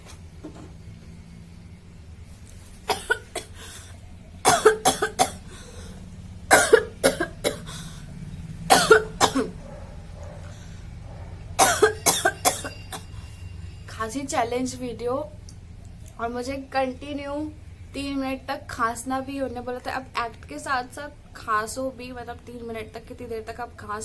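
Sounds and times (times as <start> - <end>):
woman coughing: 2.9 - 3.6, 4.4 - 5.5, 6.5 - 7.7, 8.7 - 9.6, 11.6 - 13.1.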